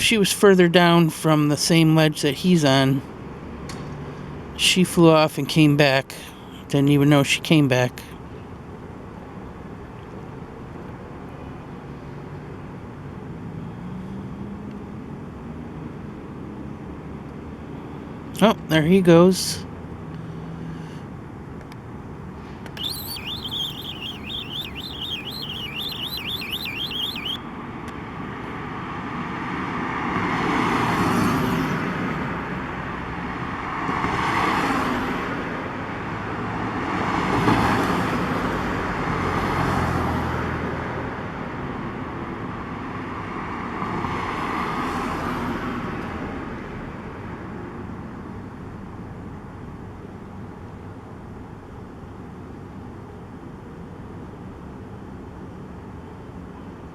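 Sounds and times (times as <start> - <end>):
cars passing: 22.8 - 27.4
rapid high chirping: 22.8 - 27.4.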